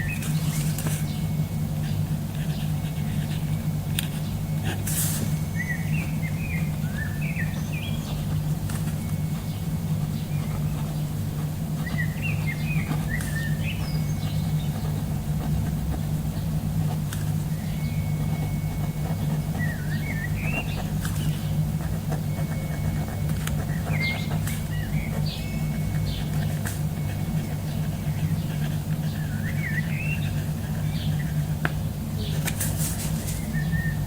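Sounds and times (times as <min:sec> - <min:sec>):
birds chirping: 0:00.0 - 0:34.0
steady low hum: 0:00.0 - 0:34.0.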